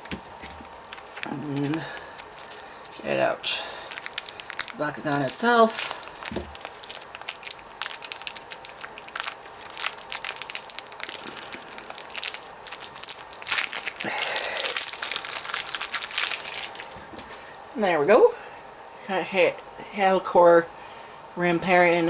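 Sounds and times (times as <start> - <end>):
plastic blister packaging crinkling: 0.0 - 17.4.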